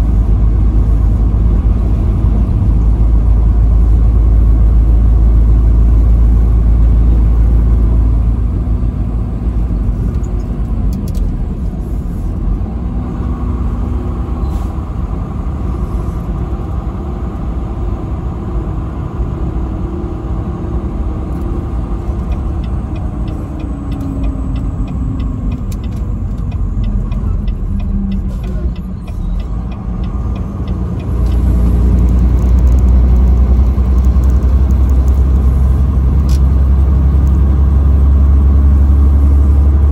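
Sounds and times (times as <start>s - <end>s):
vehicle engine and road noise: 0.0s - 39.9s.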